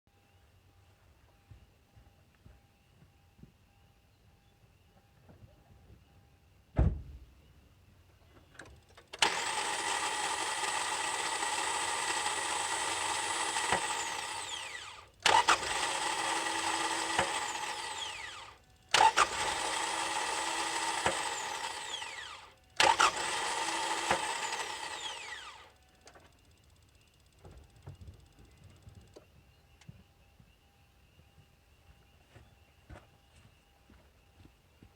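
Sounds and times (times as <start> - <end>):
low thump: 6.8 - 7.3
starter motor whining: 8.5 - 29.2
starter solenoid click: 8.6 - 27.4.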